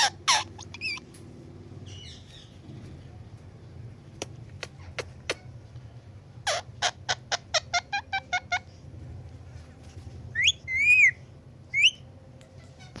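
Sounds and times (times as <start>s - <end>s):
parrot whistled notes: 10.4s - 12.0s.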